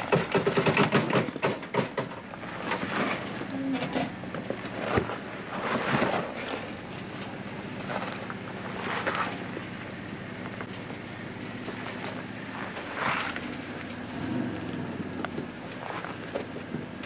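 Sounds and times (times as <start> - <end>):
off-road vehicle engine running: 0.0 - 17.0.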